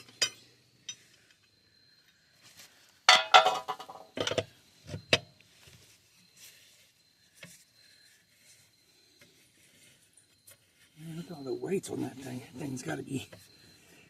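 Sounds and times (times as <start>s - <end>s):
metal parts clattering: 3.1s - 4.4s.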